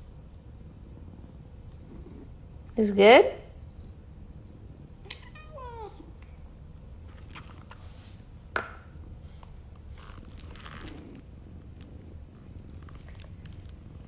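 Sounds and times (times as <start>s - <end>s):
faint scraping and rustling: 7.0s - 14.0s.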